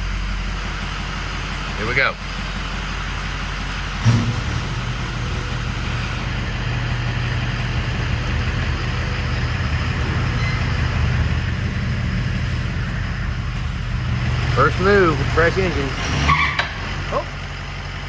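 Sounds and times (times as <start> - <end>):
diesel engine running: 0.0 - 18.0
thump: 4.0 - 5.6.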